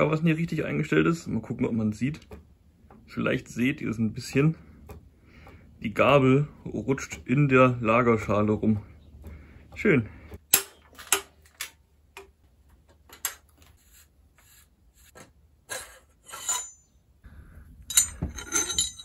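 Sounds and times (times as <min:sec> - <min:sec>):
metal rattles: 0:17.8 - 0:19.0
metallic clicks and clinks: 0:17.8 - 0:19.0.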